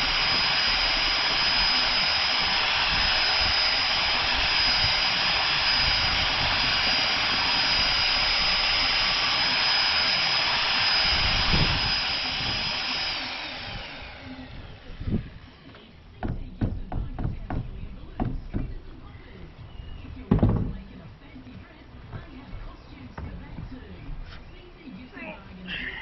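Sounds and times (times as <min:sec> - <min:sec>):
electric drill mixing paddle whine: 0:00.0 - 0:16.7
knocks: 0:16.2 - 0:18.9, 0:20.2 - 0:21.0.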